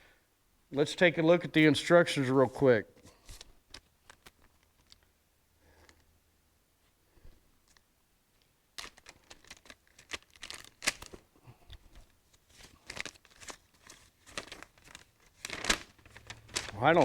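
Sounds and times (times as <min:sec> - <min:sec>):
packaging rustling and crinkling: 0:03.2 - 0:05.1, 0:08.8 - 0:11.3, 0:11.9 - 0:17.0.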